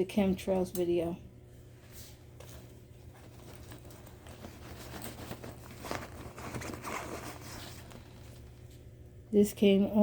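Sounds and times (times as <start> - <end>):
faint low hum: 0.0 - 10.0
rummaging in a backpack: 2.4 - 8.5.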